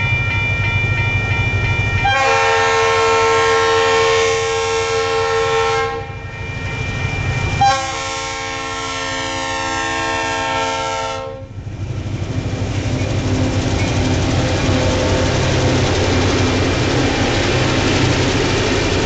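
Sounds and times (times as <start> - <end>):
low rumble of locomotive engines: 0.0 - 19.0
locomotive air horn blasts: 2.0 - 6.2, 7.6 - 11.5.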